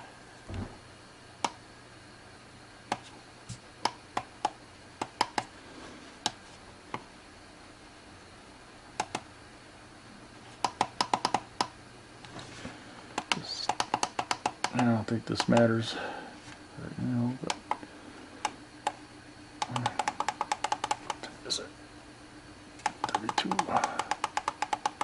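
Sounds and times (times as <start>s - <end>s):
alarm clock buttons clicking: 22.8s - 25.0s.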